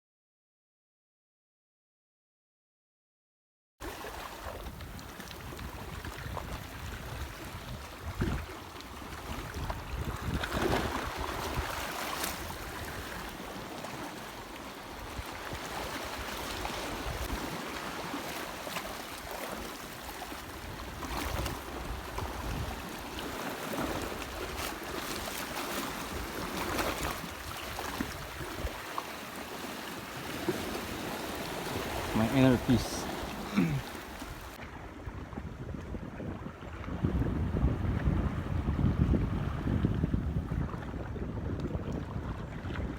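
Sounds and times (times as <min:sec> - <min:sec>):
wind rumbling on microphone: 0:04.4 - 0:13.6, 0:14.9 - 0:17.7, 0:20.5 - 0:24.8, 0:25.9 - 0:28.9, 0:30.1 - 0:42.9
water washing and splashing: 0:22.8 - 0:34.6.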